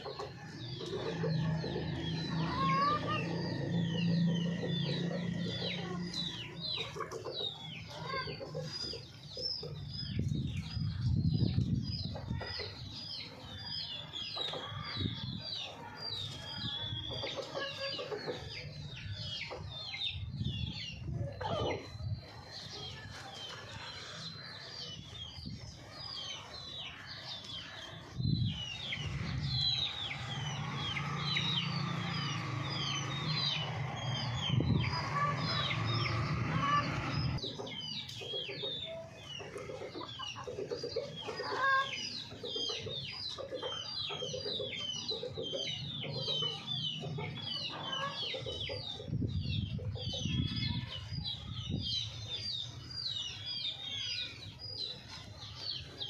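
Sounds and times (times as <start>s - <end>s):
chickens clucking: 0.0s - 56.0s.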